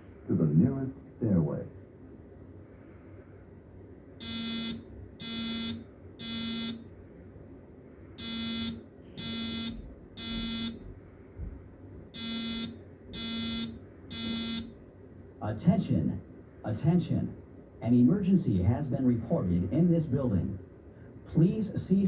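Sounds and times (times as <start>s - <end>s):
buzzy fire alarm tone: 4.2s - 6.9s, 8.2s - 11.0s, 12.1s - 14.8s.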